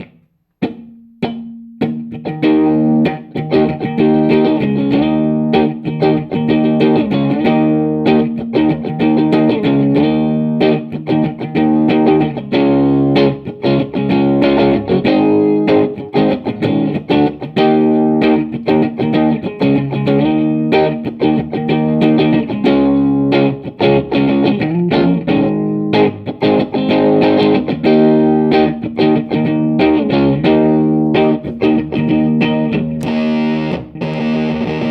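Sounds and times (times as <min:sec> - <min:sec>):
fuzz-distorted electric guitar: 0:00.0 - 0:34.9.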